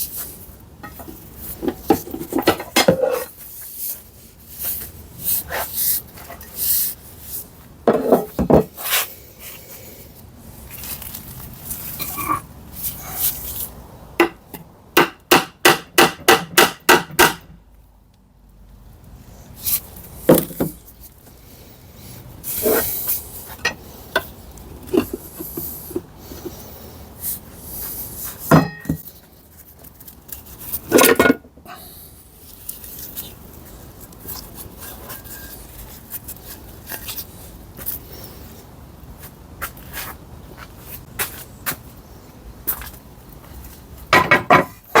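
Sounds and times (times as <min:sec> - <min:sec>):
metal tools clanking and rattling: 0:28.5 - 0:29.0.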